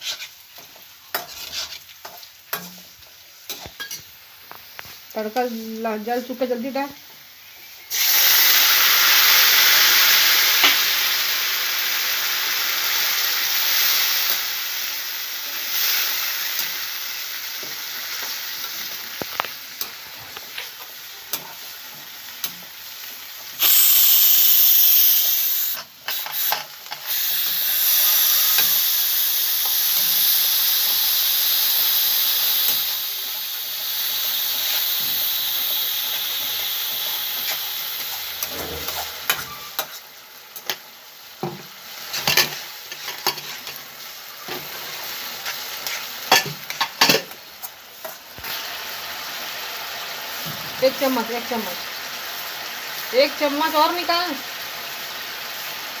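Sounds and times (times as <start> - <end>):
hot oil sizzling: 0.0 - 56.0.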